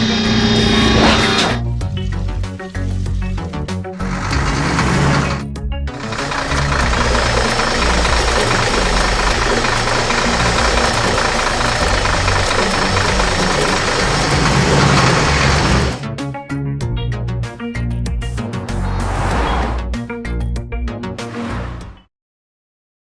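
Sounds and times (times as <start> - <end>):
cartoon vehicle engine rattle: 0.0 - 16.1.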